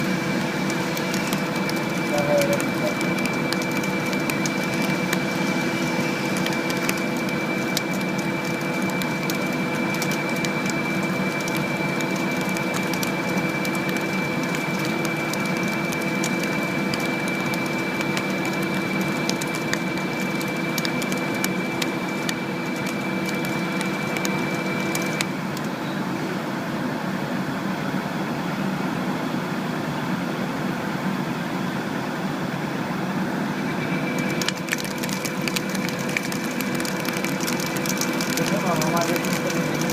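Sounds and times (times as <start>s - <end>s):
lathe machine running: 0.0s - 26.2s, 33.2s - 39.9s
crackling and ticking: 0.2s - 25.7s, 34.1s - 39.9s.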